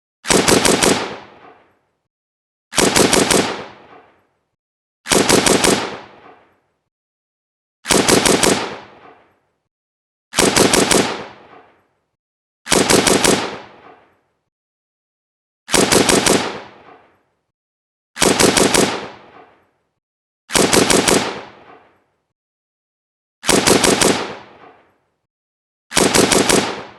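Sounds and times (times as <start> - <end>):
rifle automatic bursts: 0.2 - 1.7, 2.7 - 4.2, 5.1 - 6.4, 7.8 - 9.2, 10.3 - 11.7, 12.7 - 14.0, 15.7 - 17.0, 18.2 - 19.5, 20.5 - 22.0, 23.4 - 24.9, 25.9 - 26.9.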